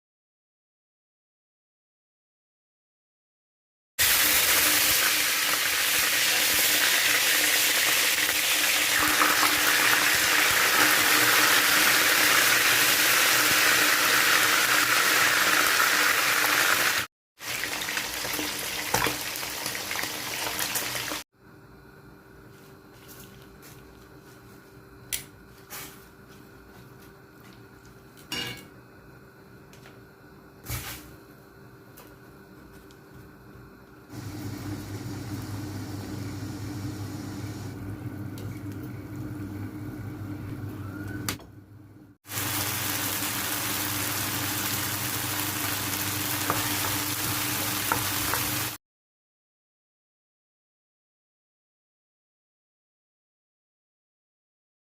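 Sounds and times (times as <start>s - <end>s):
fish frying in hot oil: 4.0s - 21.2s, 42.2s - 48.8s.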